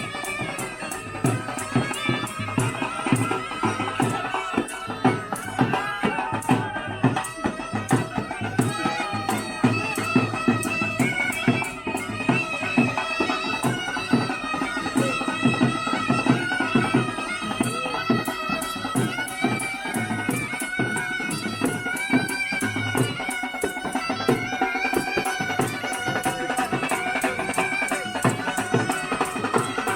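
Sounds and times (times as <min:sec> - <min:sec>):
drums beating fast rhythm: 0:00.0 - 0:29.9
reed pipe melody: 0:00.0 - 0:29.9.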